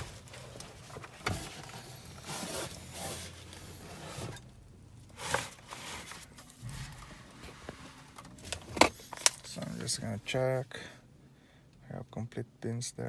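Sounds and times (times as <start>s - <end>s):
rustling and clicks of handling: 0.0s - 10.4s.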